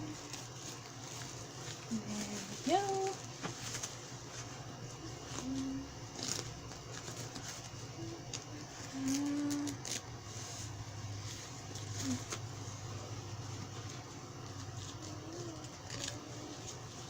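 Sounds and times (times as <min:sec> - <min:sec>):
steady low hum: 0:00.0 - 0:17.0
diaper crinkling and clicks: 0:05.2 - 0:10.1, 0:14.6 - 0:16.8.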